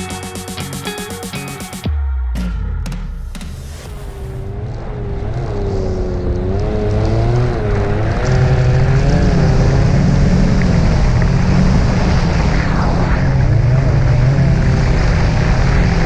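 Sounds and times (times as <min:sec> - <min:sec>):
snowmobile engine under load: 0:04.4 - 0:12.6, 0:13.4 - 0:16.0.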